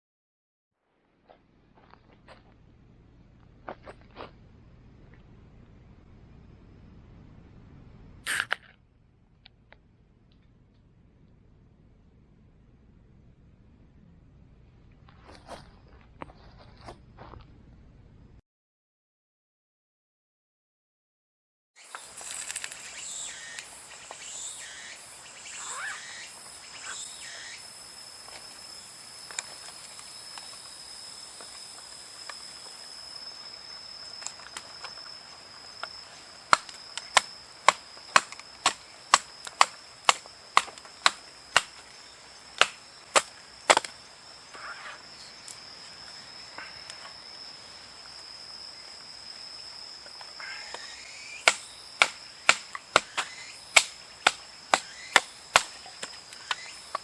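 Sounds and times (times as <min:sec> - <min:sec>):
insects droning: 0:01.0 - 0:08.4, 0:21.8 - 0:57.0.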